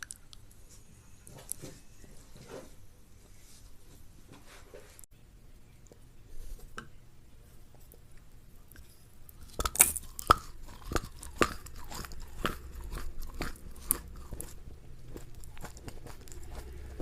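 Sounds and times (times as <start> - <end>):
crunchy food chewing: 7.8 - 17.0.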